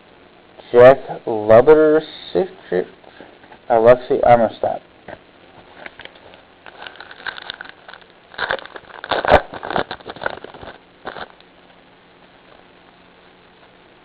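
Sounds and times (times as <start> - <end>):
trading cards rustling: 5.8 - 11.4.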